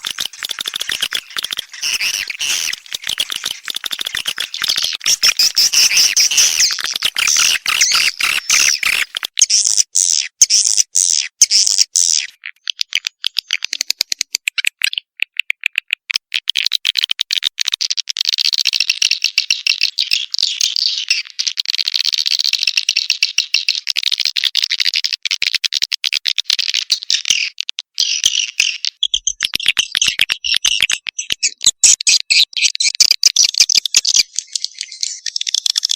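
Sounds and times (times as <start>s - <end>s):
high-pitched chattering bird twitter: 0.0s - 15.4s, 18.8s - 21.6s, 27.0s - 35.9s.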